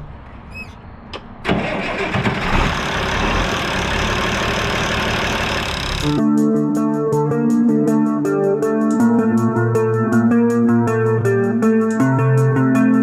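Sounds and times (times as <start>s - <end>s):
diesel engine starting: 0.0s - 6.2s.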